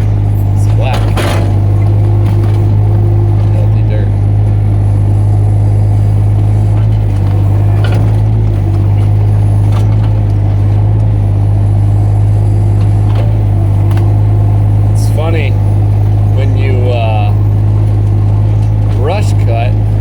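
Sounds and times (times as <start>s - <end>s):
faint clicks and knocks: 0.0s - 14.9s
diesel engine running steadily: 0.0s - 20.0s.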